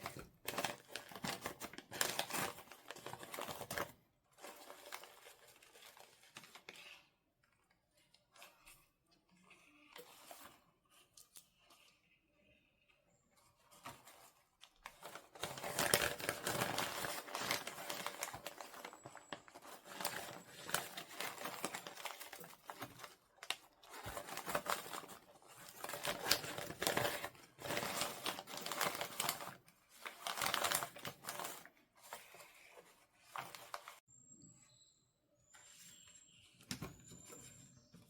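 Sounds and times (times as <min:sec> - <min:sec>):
packaging crinkling and rustling: 0:00.0 - 0:07.1, 0:13.6 - 0:34.0.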